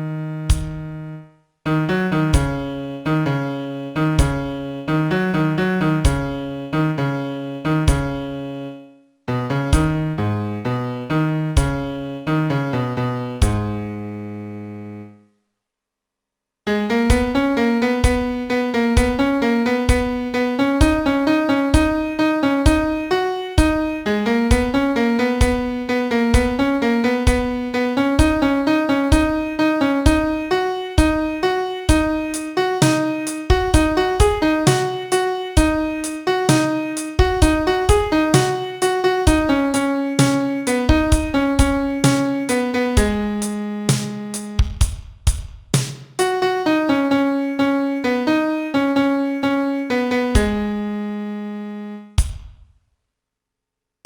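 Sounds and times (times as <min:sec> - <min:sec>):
solo piano playing a melody: 0:00.0 - 0:15.2, 0:16.7 - 0:44.6, 0:46.2 - 0:52.2.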